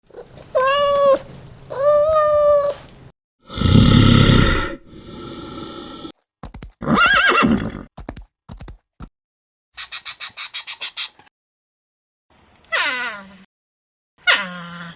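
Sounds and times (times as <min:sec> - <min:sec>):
drawn-out animal calls: 0:09.8 - 0:11.3.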